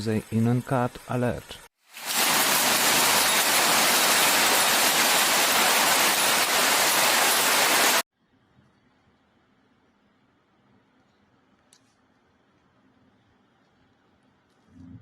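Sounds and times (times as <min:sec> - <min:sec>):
heavy rain hissing: 0:01.9 - 0:08.0.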